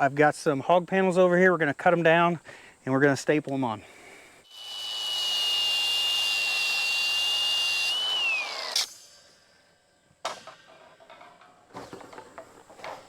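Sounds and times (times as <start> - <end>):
angle grinder cutting wire: 4.5 - 9.3.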